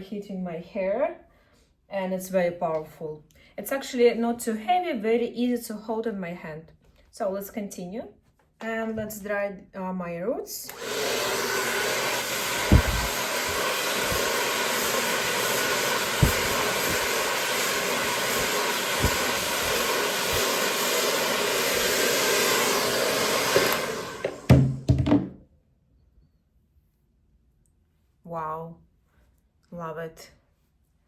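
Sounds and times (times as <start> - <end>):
hair dryer blowing: 10.7 - 25.0.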